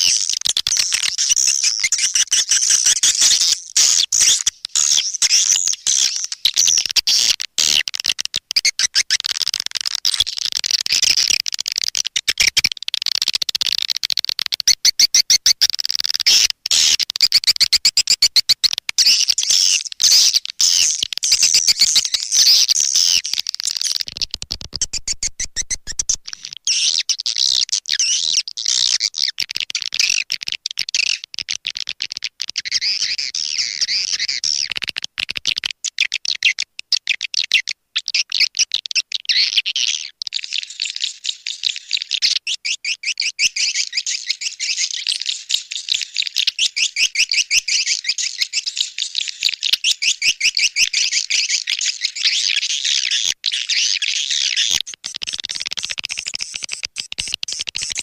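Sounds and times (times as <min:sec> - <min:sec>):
swiftlet calls twittering: 0:00.0 - 0:07.1, 0:14.8 - 0:27.6, 0:40.3 - 0:54.6.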